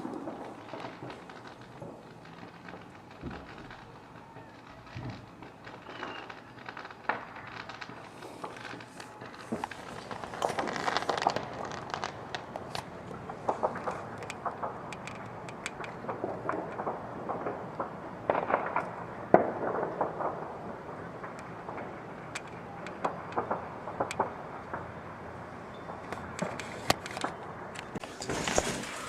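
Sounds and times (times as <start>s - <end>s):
loud firework bang: 0.0s - 6.4s, 7.1s - 24.9s
fireworks popping and crackling: 0.0s - 29.0s.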